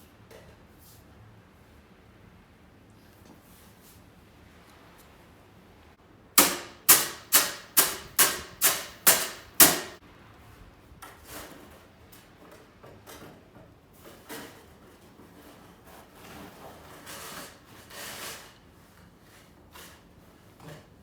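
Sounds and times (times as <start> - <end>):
sharp ringing knocks: 6.4 - 10.0.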